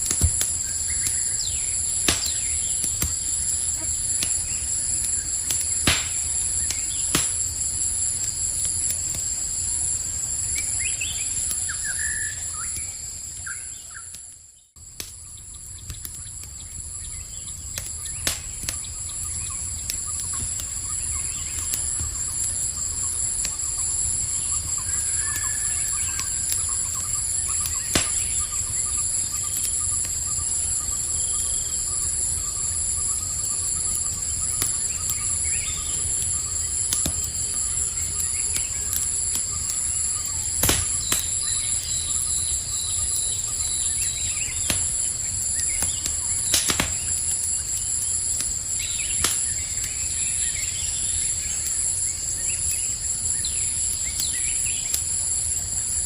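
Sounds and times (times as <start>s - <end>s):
campfire crackling: 0.0s - 56.0s
night insect chorus: 0.0s - 56.0s.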